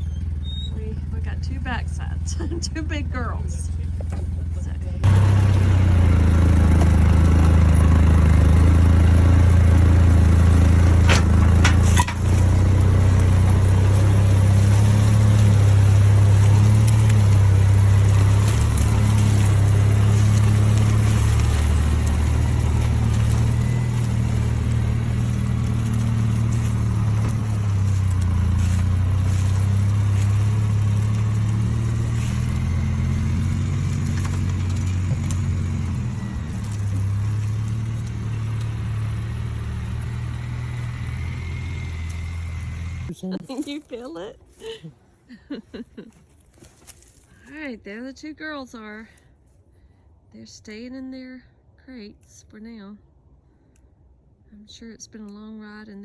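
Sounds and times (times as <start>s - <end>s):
vehicle engine humming: 0.0s - 56.0s
short clatter: 9.3s - 14.0s.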